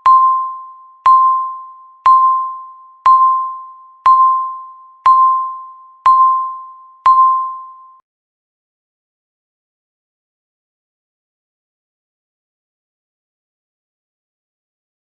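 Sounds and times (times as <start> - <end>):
timer electronic beeps: 0.0 - 8.0.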